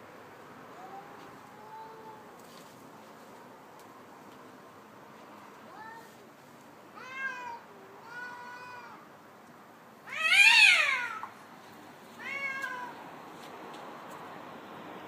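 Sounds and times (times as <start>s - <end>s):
cat yowling: 7.0s - 9.0s, 10.1s - 11.3s, 12.2s - 13.0s.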